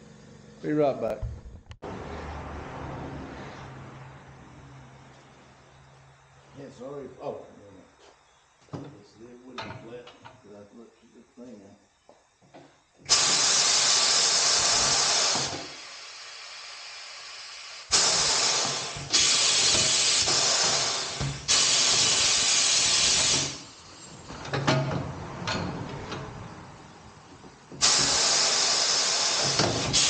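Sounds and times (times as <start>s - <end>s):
compressed air hissing from hose: 13.1s - 24.2s, 27.8s - 30.0s.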